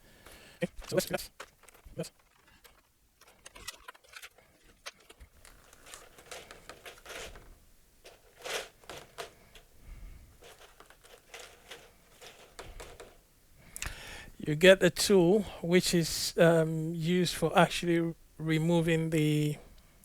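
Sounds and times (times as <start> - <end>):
packaging rustling and crinkling: 0.0 - 13.3.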